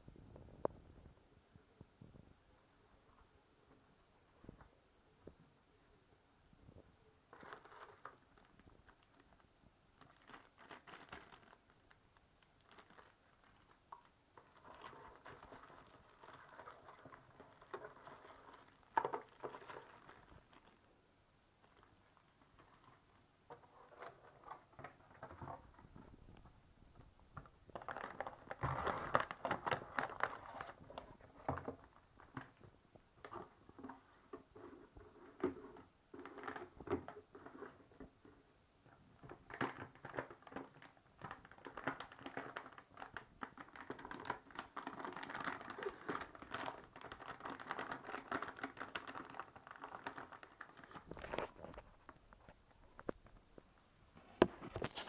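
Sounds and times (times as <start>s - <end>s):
packaging rustling and clicks: 7.3s - 20.8s, 39.5s - 53.5s.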